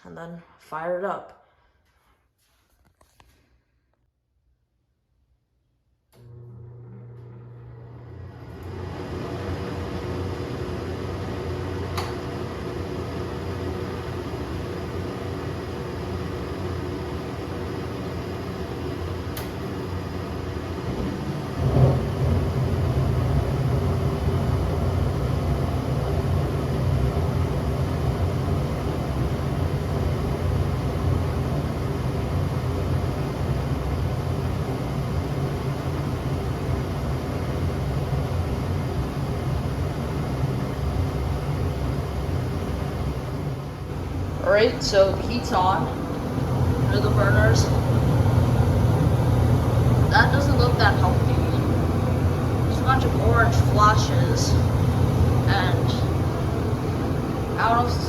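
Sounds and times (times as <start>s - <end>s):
furnace fan motor humming: 6.1s - 58.0s
gas burners lighting thump: 11.9s - 12.4s.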